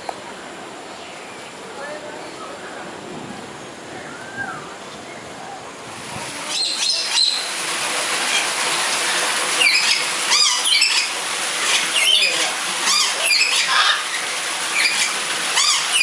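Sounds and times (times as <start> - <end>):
steady rushing hiss: 0.0 - 16.0
birds chirping and squawking: 6.5 - 7.5, 9.6 - 16.0.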